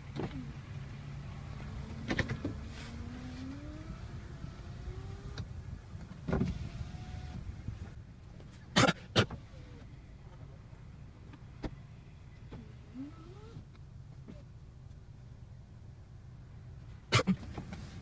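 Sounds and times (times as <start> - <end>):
car hum: 0.0 - 18.0
faint rising whines: 0.4 - 8.0.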